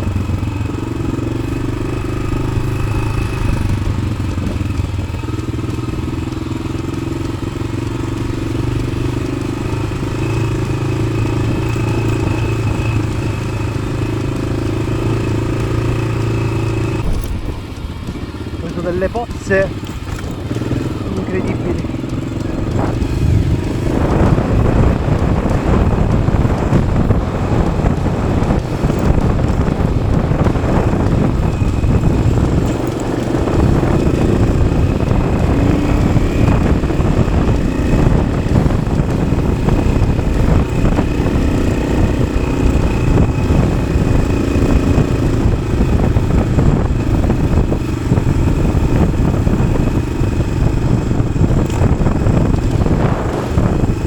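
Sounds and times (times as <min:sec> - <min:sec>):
motorcycle engine running under load: 0:00.0 - 0:54.0.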